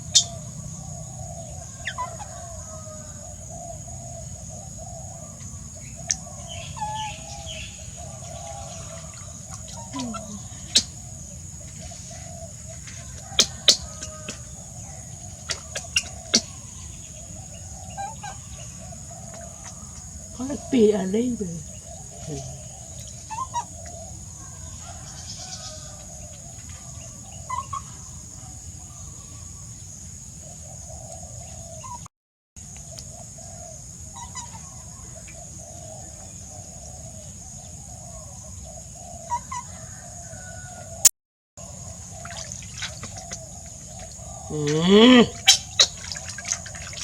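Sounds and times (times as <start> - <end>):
chickens clucking: 8.2 - 14.8, 44.0 - 47.0.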